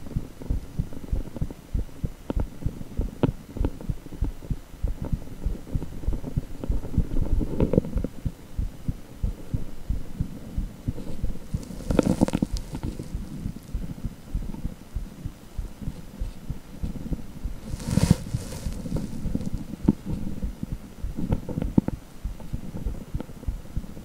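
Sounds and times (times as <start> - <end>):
rhythmic low heartbeat pulsing: 0.0 - 24.0
rustling noise: 11.0 - 13.8, 15.8 - 23.1.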